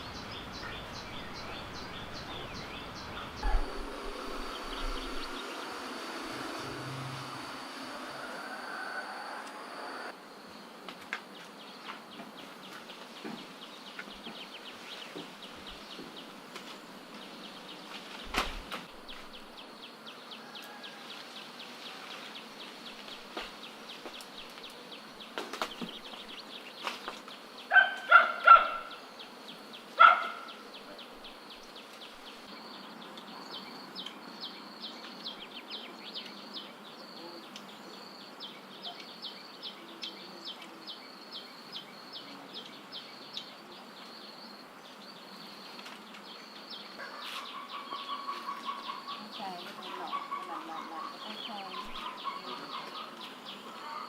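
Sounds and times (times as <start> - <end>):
insects chirping: 0.0 - 20.9, 21.5 - 54.0
outdoor hiss: 0.0 - 47.5.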